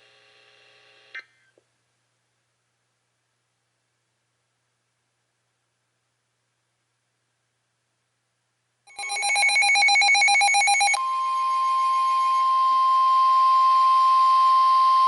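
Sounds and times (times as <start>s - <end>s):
faint radio hiss: 0.0s - 8.9s
rapid electronic alert beeps: 8.9s - 12.4s
steady warning alarm tone: 8.9s - 15.0s.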